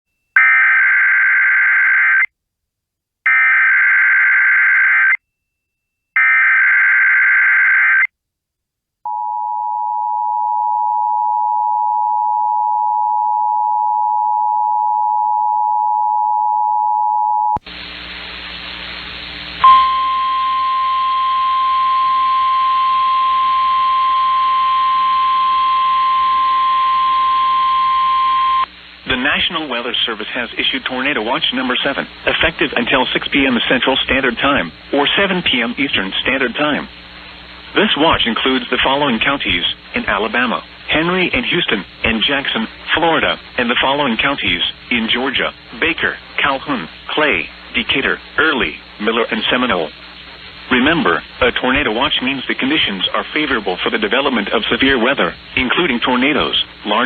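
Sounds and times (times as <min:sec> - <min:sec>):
radio static hiss: 0:17.6 - 0:20.6, 0:22.1 - 0:57.0
two-tone attention signal: 0:19.6 - 0:28.6.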